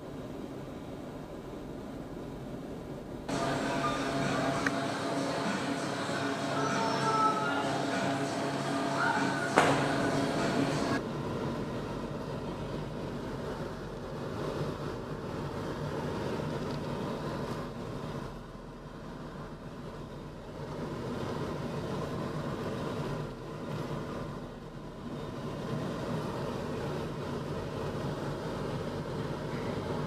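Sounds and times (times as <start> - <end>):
car engine and road noise: 0.0 - 30.0.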